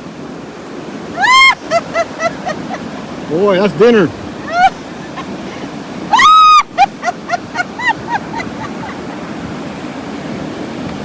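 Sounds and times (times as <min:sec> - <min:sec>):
surf washing: 0:00.0 - 0:11.0
gull calling: 0:01.1 - 0:09.2.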